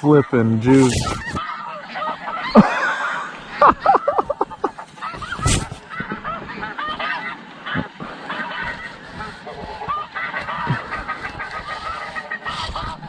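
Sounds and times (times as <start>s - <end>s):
snow geese honking: 0.0s - 13.0s.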